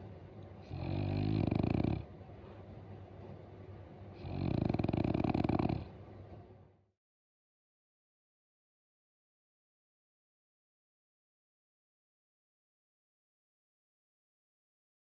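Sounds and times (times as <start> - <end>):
dog breathing: 0.6 - 2.1, 4.2 - 5.9
dog snoring: 0.6 - 2.1, 4.2 - 6.0.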